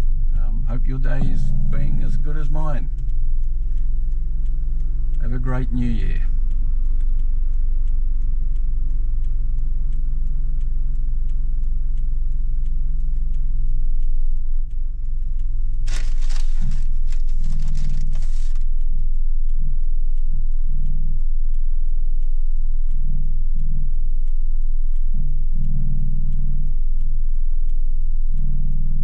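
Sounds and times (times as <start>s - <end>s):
car interior road rumble: 0.0s - 18.9s
faint steady ticking: 0.0s - 29.0s
low pulsing hum: 0.0s - 29.0s.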